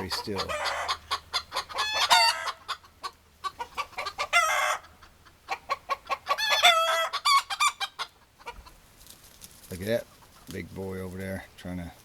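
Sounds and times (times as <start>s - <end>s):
chicken squawk: 0.0s - 8.8s
chickens clucking: 0.0s - 11.8s.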